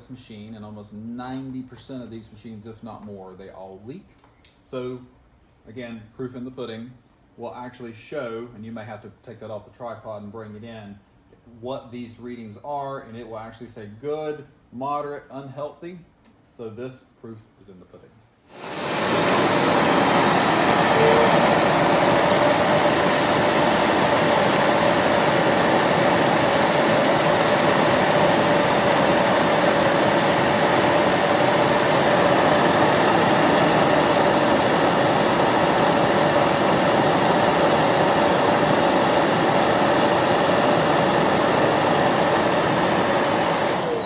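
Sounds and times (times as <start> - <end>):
vacuum cleaner running: 18.5 - 44.0.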